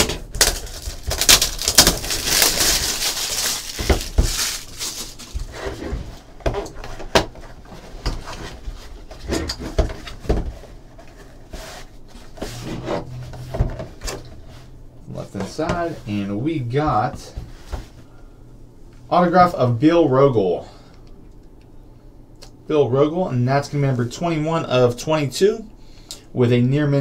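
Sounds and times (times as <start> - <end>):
wrapping paper rustling and tearing: 0.0 - 5.9.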